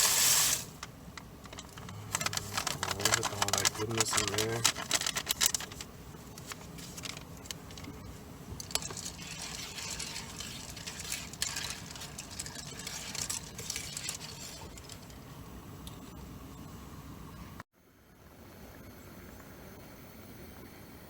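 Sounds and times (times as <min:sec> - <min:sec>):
soup cooking in a pan: 0:00.0 - 0:02.1, 0:06.2 - 0:16.6.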